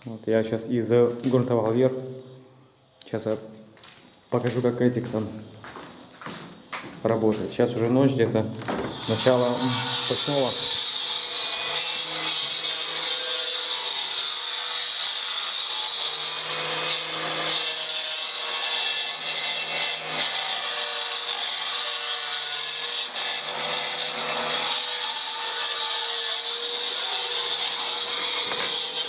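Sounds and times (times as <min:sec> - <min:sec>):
saw cutting stone hiss: 0:08.9 - 0:29.0.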